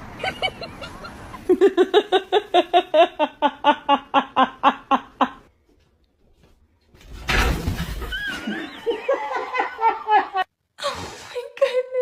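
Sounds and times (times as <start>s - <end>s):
person laughing: 0.2s - 5.4s.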